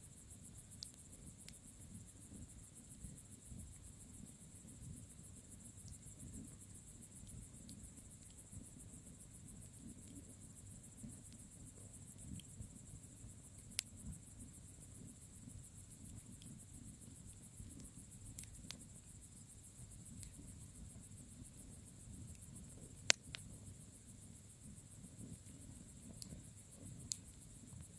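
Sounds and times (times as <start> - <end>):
crickets trilling: 0.1 - 27.9
bonfire crackling: 5.1 - 27.9.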